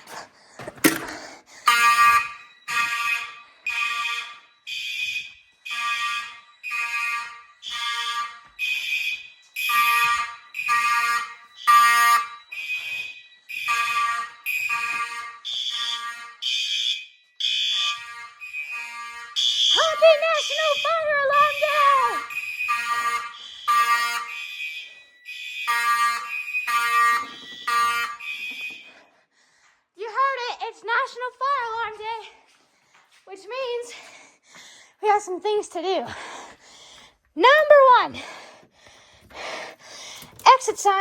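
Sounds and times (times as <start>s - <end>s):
fire alarm horn blasts: 0.8s - 29.3s.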